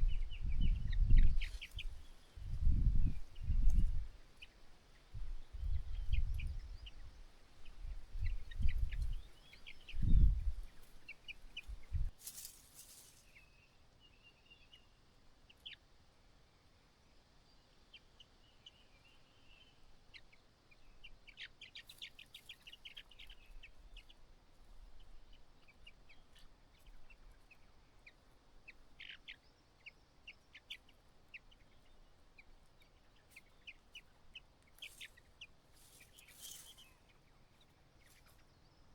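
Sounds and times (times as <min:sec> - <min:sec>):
birds chirping calls: 0:00.0 - 0:15.9, 0:17.5 - 0:38.9
brief rustling hiss: 0:12.2 - 0:13.3.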